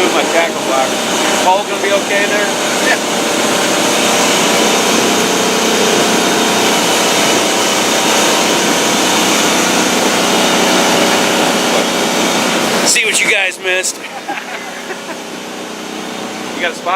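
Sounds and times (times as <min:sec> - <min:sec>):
boat motor running: 0:00.0 - 0:16.9.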